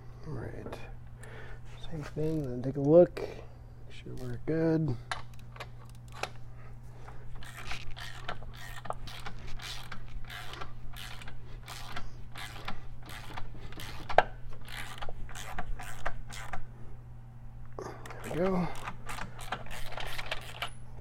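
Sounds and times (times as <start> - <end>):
hand ratchet clicking: 5.1 - 6.4, 7.4 - 16.6, 18.0 - 20.8.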